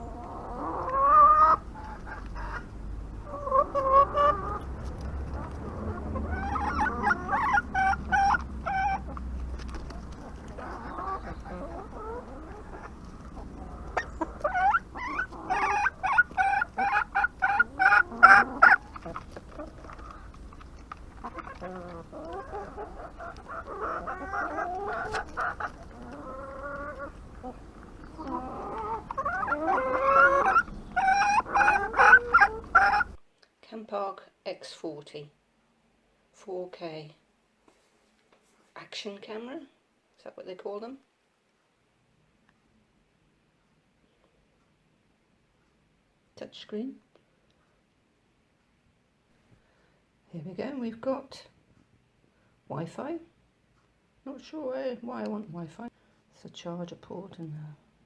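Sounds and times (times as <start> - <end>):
chickens clucking: 0.0 - 33.3.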